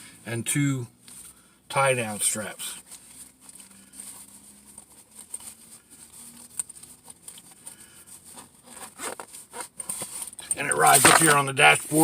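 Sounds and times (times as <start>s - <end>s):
pouch handling clicks and rustles: 2.8s - 12.0s.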